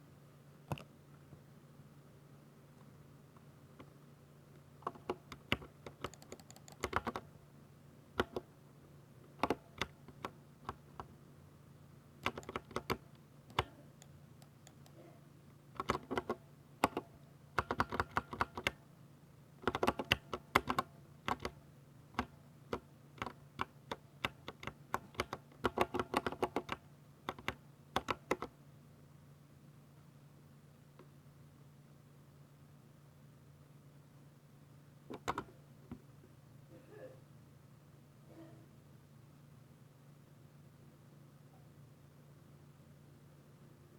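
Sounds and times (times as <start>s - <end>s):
mechanical keyboard typing: 4.8s - 7.3s, 8.2s - 8.5s, 9.4s - 11.1s, 12.2s - 15.0s, 15.8s - 18.8s, 19.6s - 21.6s, 22.2s - 28.5s, 35.1s - 35.5s.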